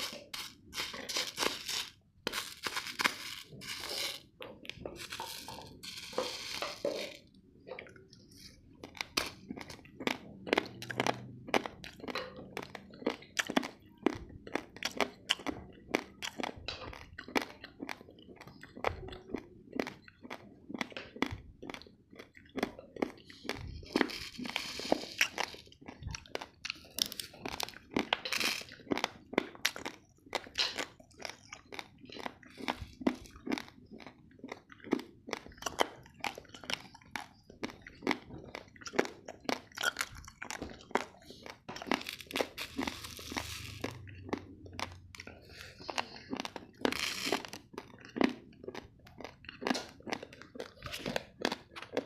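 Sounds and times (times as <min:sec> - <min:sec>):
rice grains crunched by teeth: 0:00.0 - 0:07.3, 0:19.8 - 0:52.0.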